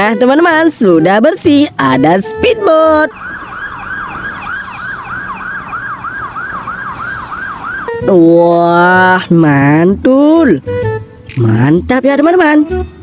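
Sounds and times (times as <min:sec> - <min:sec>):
electronic siren yelping: 0:00.0 - 0:09.2.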